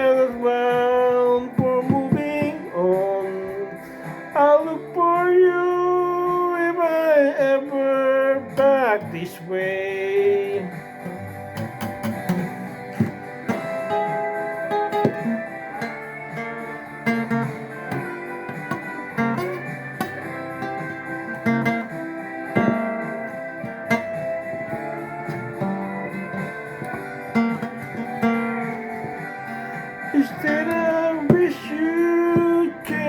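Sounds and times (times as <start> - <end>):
folk guitar picking a melody: 0.0 - 33.0.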